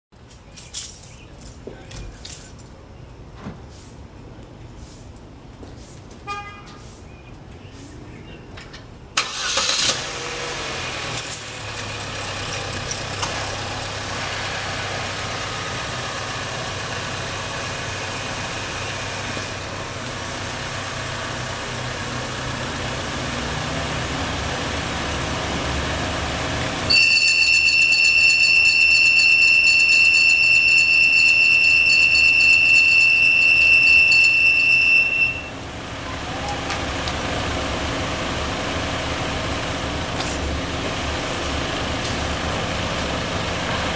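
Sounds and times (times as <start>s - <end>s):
car engine idling: 9.2s - 26.9s, 31.3s - 43.9s.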